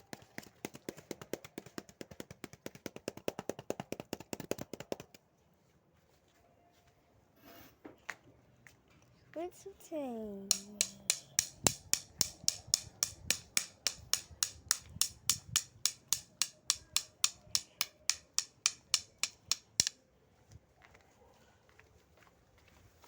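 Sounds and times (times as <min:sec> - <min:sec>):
drum sharp bright taps: 0:10.5 - 0:19.9.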